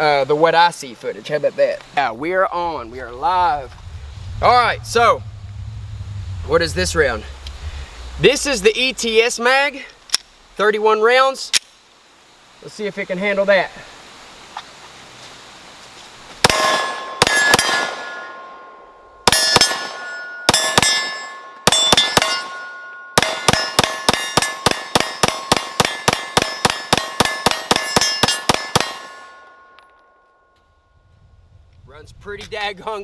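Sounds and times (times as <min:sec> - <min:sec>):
pistol shots: 0:16.4 - 0:18.2, 0:23.2 - 0:29.2
steel target clanging: 0:16.5 - 0:29.9.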